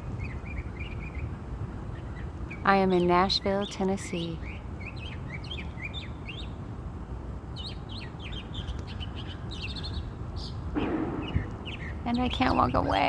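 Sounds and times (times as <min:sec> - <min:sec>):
songbird chirping: 0:00.0 - 0:06.7, 0:07.5 - 0:13.0
steady low rumble: 0:10.0 - 0:13.0.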